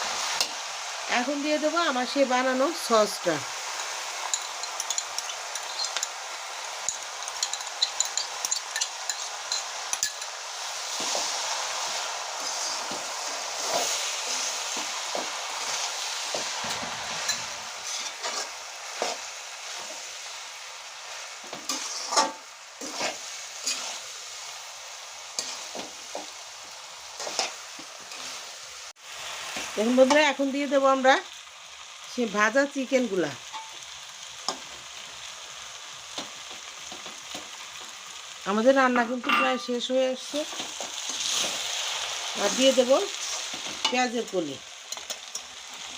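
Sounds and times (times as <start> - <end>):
noodles sizzling in a pan: 0.0 - 45.9
spatula scraping and knocking pan: 21.4 - 23.9.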